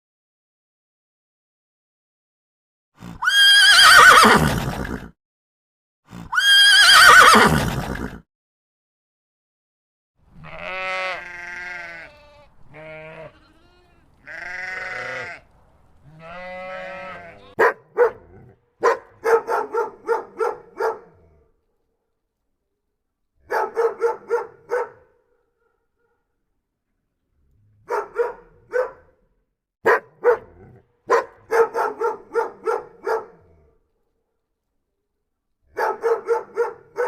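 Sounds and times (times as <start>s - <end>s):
farm animal bleating: 10.3s - 17.6s
dog barking: 17.5s - 21.3s, 23.4s - 26.3s, 27.8s - 33.5s, 35.7s - 37.0s.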